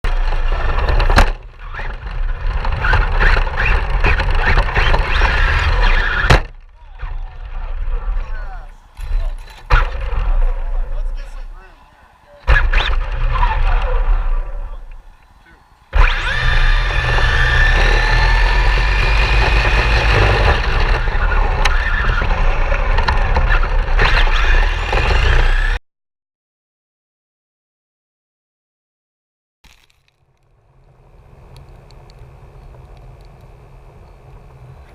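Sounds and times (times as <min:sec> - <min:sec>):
electric motor whining: 0:00.1 - 0:11.6, 0:12.4 - 0:25.8
heavy low rumble: 0:00.1 - 0:11.8, 0:12.5 - 0:24.0
radio-controlled car running: 0:00.1 - 0:25.8, 0:31.3 - 0:34.9.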